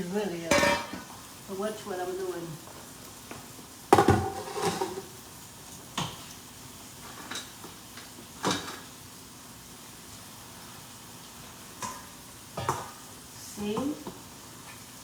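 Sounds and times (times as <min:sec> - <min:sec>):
cookware clattering: 0:00.5 - 0:01.2, 0:03.9 - 0:05.1, 0:08.4 - 0:08.8, 0:12.6 - 0:13.0.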